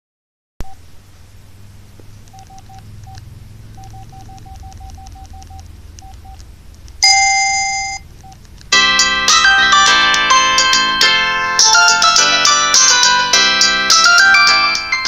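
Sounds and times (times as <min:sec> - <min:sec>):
fuller phone tone: 0:02.3 - 0:03.2, 0:03.8 - 0:06.4, 0:07.0 - 0:15.0
phone keypad beeps: 0:02.3 - 0:03.2, 0:03.8 - 0:06.4, 0:07.0 - 0:08.4.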